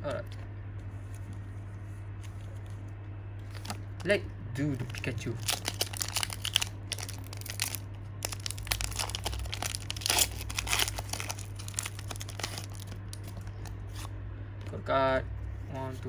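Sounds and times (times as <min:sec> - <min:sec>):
foil wrapper tearing and crinkling: 0:03.5 - 0:04.1, 0:04.8 - 0:13.8.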